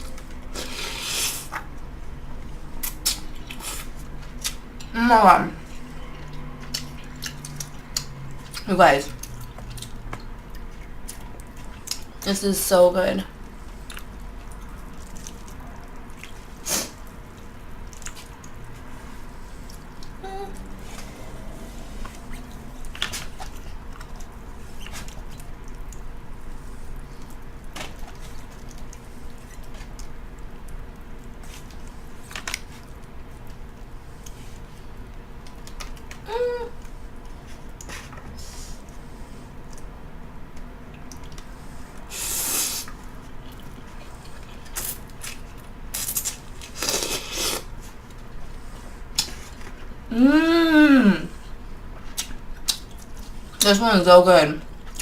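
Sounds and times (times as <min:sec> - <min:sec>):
low steady hum: 0:00.0 - 0:55.0
wet chewing: 0:06.2 - 0:12.2, 0:13.4 - 0:36.2.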